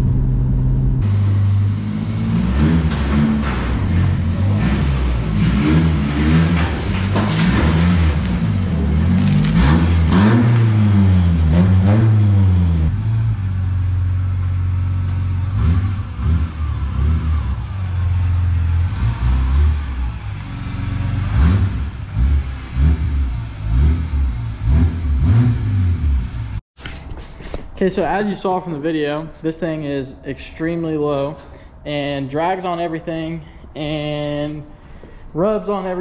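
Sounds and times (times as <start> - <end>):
pickup engine revving: 0.0 - 26.6.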